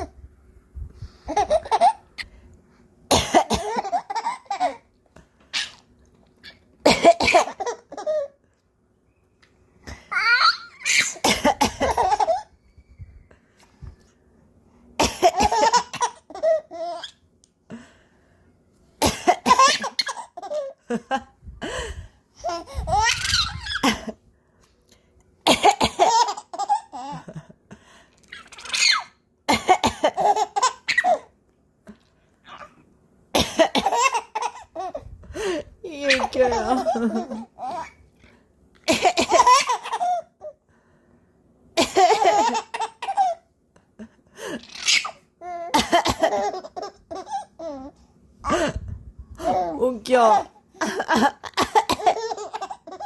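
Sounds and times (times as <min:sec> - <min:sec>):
baby laughing: 0:01.3 - 0:02.1, 0:09.9 - 0:12.5, 0:15.2 - 0:17.2, 0:19.3 - 0:20.8, 0:22.4 - 0:24.2, 0:28.2 - 0:29.1, 0:30.0 - 0:31.3, 0:33.6 - 0:35.1, 0:36.0 - 0:38.0, 0:38.8 - 0:40.5, 0:41.8 - 0:43.4, 0:44.6 - 0:48.7, 0:49.4 - 0:53.0.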